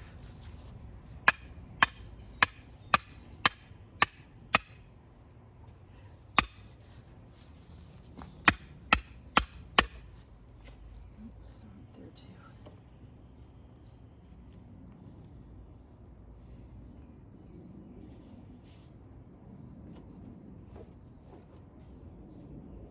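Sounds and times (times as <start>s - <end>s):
hammer striking metal stake: 1.3s - 4.9s, 6.4s - 6.8s, 8.4s - 10.2s.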